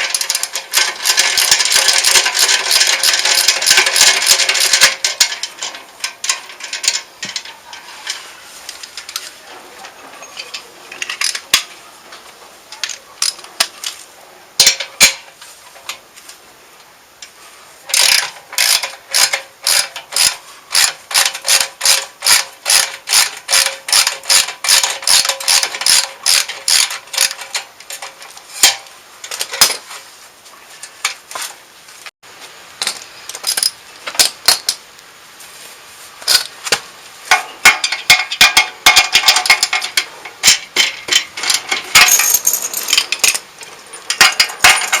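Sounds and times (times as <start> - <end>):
ratchet wrench clicking: 17.9 - 27.4.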